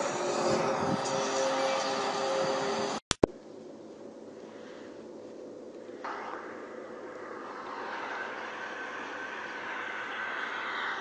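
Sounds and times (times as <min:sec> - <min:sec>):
noisy drone with held tone: 0:00.0 - 0:11.0.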